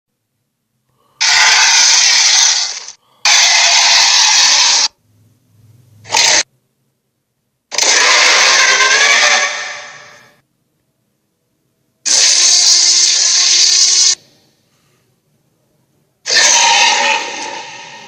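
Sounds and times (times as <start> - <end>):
harsh roar sound effect: 1.2 - 5.0, 6.1 - 6.4, 7.7 - 10.3, 12.1 - 14.2, 16.3 - 18.0
faint low hum: 4.9 - 7.8, 10.0 - 12.1, 14.2 - 16.3.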